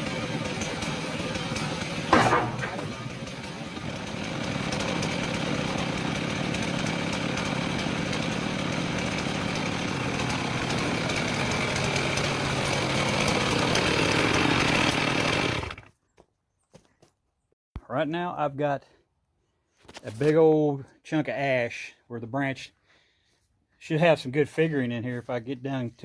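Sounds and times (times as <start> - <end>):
chainsaw cutting log: 0.0 - 15.9.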